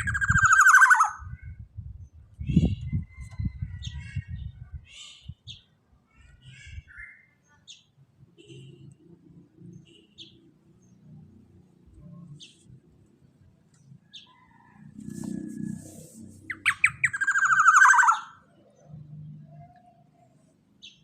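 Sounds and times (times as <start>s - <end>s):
oriole chirps: 16.4s - 21.0s
harsh pulsed bird call: 16.5s - 18.5s.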